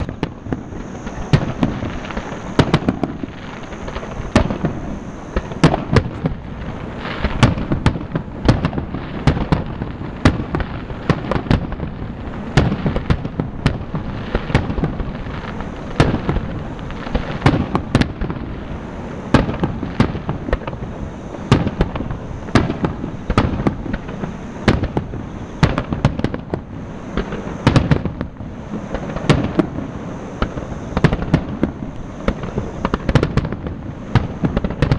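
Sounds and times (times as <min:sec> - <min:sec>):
fireworks shells bursting: 0:00.0 - 0:18.3
continuous rumble: 0:00.0 - 0:34.9.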